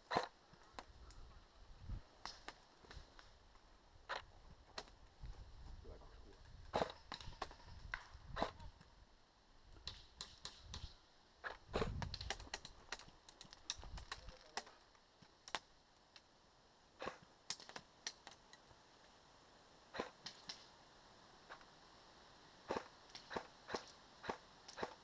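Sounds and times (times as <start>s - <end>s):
sharp clicks and snaps: 11.9s - 14.8s, 15.4s - 16.3s.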